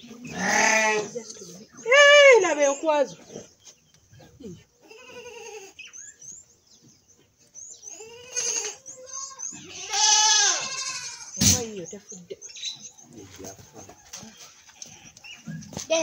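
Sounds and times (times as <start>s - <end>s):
goats bleating: 0.3s - 1.2s, 4.8s - 5.8s, 7.9s - 11.5s.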